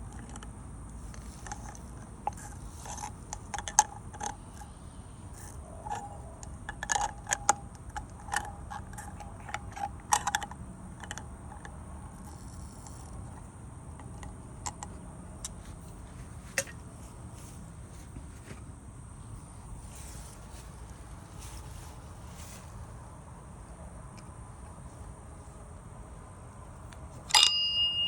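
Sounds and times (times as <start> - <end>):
small hard parts clicking: 0.0 - 15.6
steady low rumble: 0.0 - 28.0.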